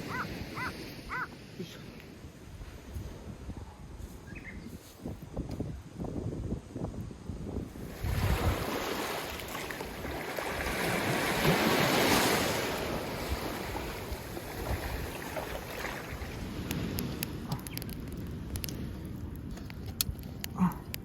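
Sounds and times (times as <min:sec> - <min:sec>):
ocean waves breaking: 0:00.0 - 0:02.2, 0:07.8 - 0:17.8
wind rumble on microphone: 0:02.2 - 0:21.0.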